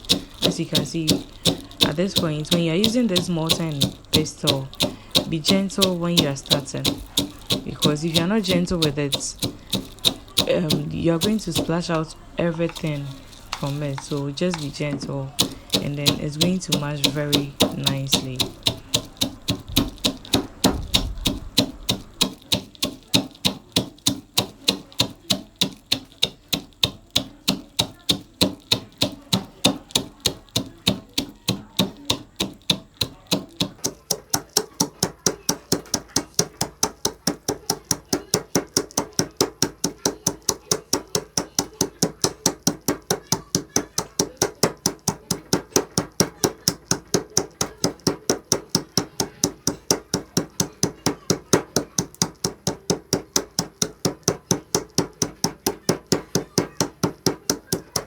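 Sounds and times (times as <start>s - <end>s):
pestle pounding nuts in mortar: 0.0s - 58.0s.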